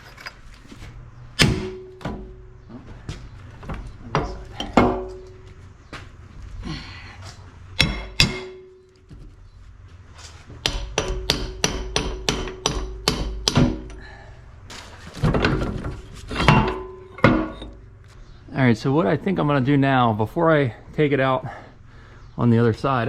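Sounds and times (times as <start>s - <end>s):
hammer striking metal: 1.4s - 2.5s, 7.8s - 8.9s, 10.6s - 14.0s.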